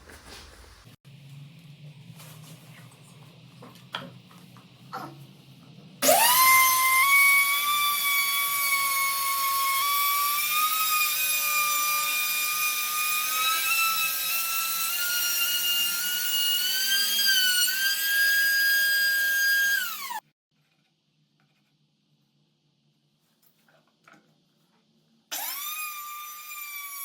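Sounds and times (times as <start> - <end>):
power tool cutting wood: 6.0 - 20.2, 25.3 - 27.0.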